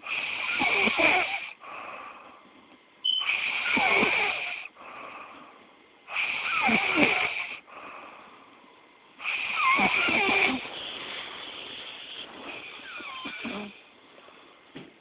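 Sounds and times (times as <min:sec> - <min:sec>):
soft breathing: 0:01.4 - 0:02.8, 0:04.6 - 0:06.2, 0:07.5 - 0:14.7
person snoring: 0:03.3 - 0:04.7, 0:09.2 - 0:10.7, 0:12.4 - 0:13.8.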